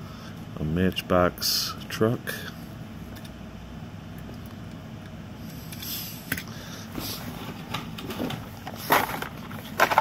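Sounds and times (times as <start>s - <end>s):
steady low hum: 0.0s - 10.0s
packaged toy cars rustling and clicking: 8.0s - 10.0s.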